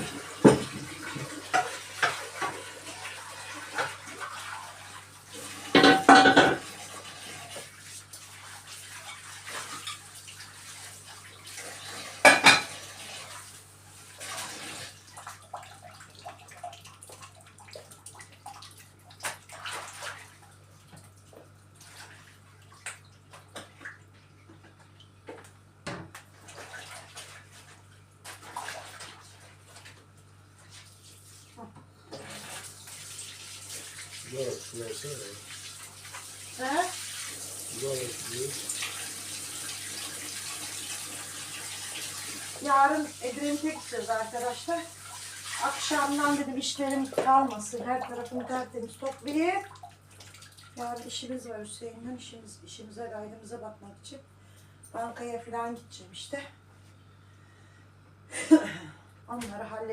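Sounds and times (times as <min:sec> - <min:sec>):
tap water running: 0:00.0 - 0:51.8
dishes and cutlery clattering: 0:05.7 - 0:06.7, 0:12.3 - 0:12.8.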